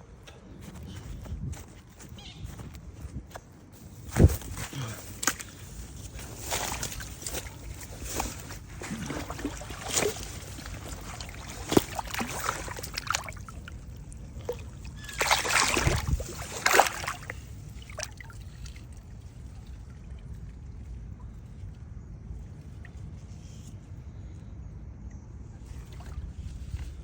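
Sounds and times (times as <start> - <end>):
water splashing and trickling: 5.0 - 23.6, 25.6 - 27.0.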